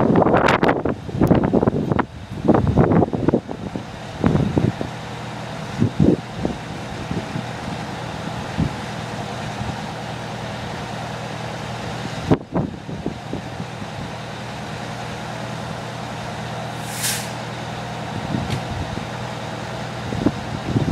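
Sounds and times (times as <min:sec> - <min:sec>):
truck engine running: 0:00.0 - 0:20.9.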